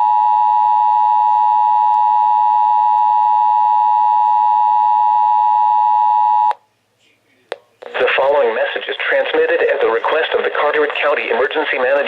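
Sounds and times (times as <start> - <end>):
two-tone alarm: 0.0 - 6.5.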